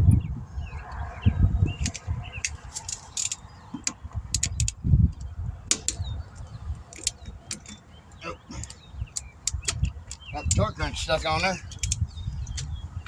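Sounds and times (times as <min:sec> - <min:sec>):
low rumbling bumps: 0:00.0 - 0:13.0
small birds chirping: 0:00.0 - 0:13.0
sharp clicks: 0:06.8 - 0:10.7, 0:11.7 - 0:12.7.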